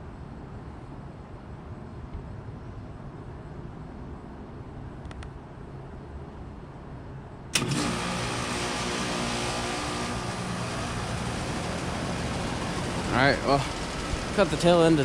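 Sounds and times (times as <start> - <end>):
heat pump rushing and humming: 7.6 - 15.0
loud whoosh of refrigerant: 7.6 - 15.0.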